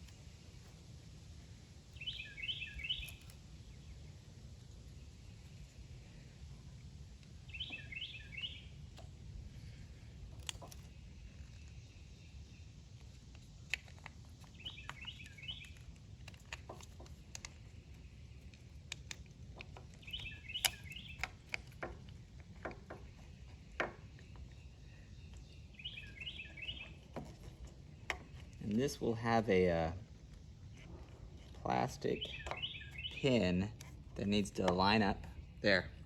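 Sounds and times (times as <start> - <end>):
steady low hum: 0.0 - 36.0
bird chirping: 1.8 - 6.3, 7.4 - 9.0, 13.7 - 18.6, 19.6 - 22.0, 22.6 - 36.0.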